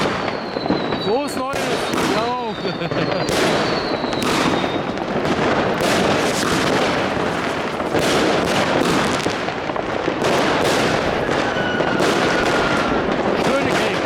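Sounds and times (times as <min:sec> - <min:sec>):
firework whistles falling in pitch: 0:00.0 - 0:05.0, 0:10.9 - 0:13.1
fireworks bangs and crackles: 0:00.0 - 0:14.0.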